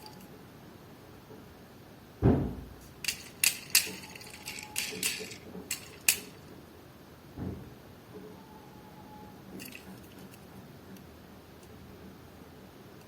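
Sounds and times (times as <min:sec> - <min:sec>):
dull thump: 0:02.2 - 0:02.8.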